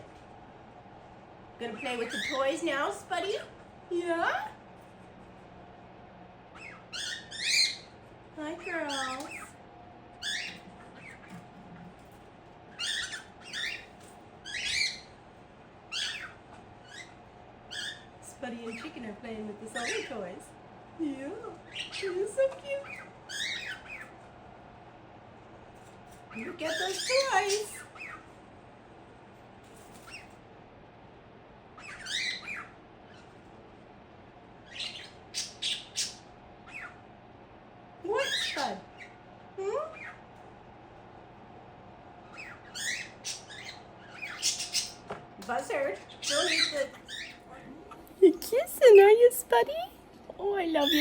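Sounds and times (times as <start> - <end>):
pet birds calling: 1.6 - 3.5, 6.5 - 15.2, 15.8 - 20.4, 21.5 - 24.2, 26.1 - 28.4, 29.8 - 30.4, 31.7 - 33.4, 34.6 - 37.1, 38.0 - 40.4, 42.1 - 51.0
bird squawks: 1.9 - 2.5, 6.5 - 9.6, 10.2 - 11.4, 12.7 - 15.2, 15.9 - 18.1, 19.8 - 20.3, 21.7 - 24.2, 26.3 - 28.3, 31.8 - 33.3, 34.6 - 37.0, 38.1 - 39.2, 42.2 - 45.1, 46.0 - 47.4, 50.8 - 51.0.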